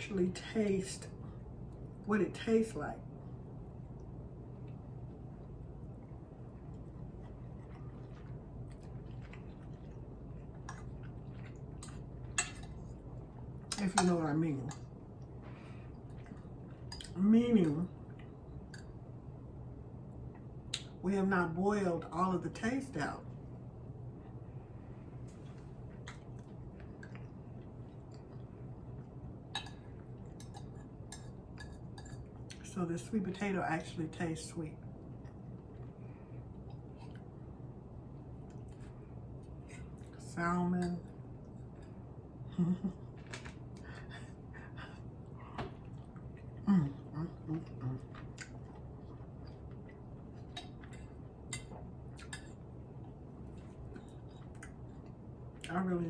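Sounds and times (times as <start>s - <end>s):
steady low hum: 0.0s - 56.0s
person chewing food: 4.0s - 13.8s, 47.4s - 55.7s
faint sharp eating clicks: 48.0s - 55.8s.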